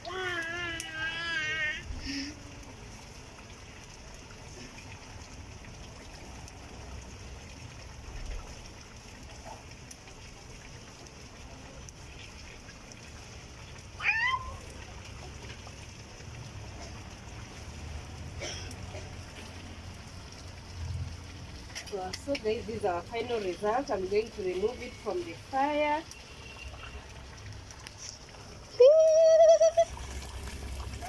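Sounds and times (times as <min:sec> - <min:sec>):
animal call rising in pitch: 0:14.0 - 0:14.6.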